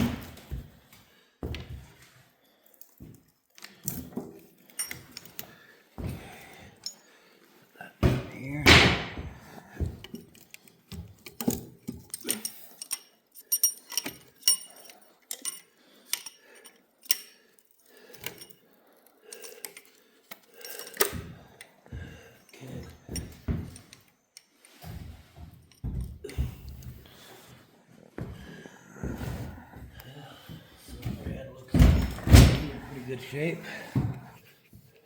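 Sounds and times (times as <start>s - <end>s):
metal parts and tools clinking: 2.6s - 5.6s, 6.2s - 7.1s, 9.8s - 21.7s.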